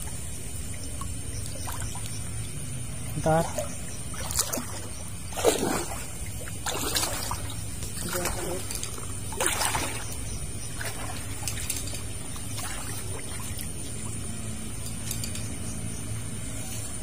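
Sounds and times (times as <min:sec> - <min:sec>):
shallow water splashing and trickling: 0:00.0 - 0:17.0
steady low hum: 0:00.0 - 0:17.0
faint clicks: 0:14.8 - 0:15.6.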